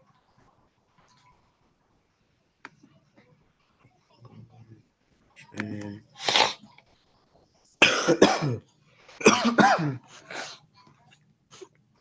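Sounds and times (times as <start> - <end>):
person coughing hard: 7.8 - 8.6, 9.2 - 10.5.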